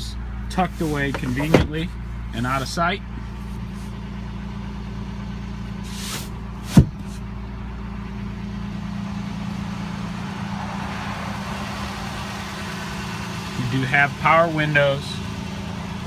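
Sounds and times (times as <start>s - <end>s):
pickup engine idling: 0.0s - 16.0s
sharp thump: 6.1s - 7.2s.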